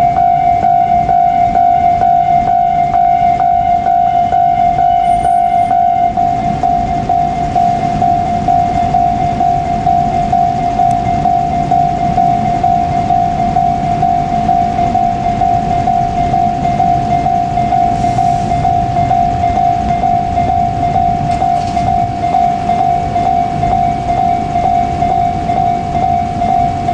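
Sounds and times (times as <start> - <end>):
electric train rumbling: 0.0 - 26.9
level-crossing warning bell: 0.0 - 26.9.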